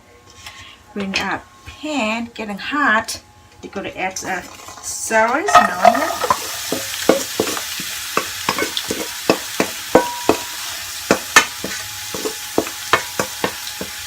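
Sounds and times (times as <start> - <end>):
vegetables sizzling in oil: 4.1 - 14.0
utensil knocking against pan: 5.5 - 14.0.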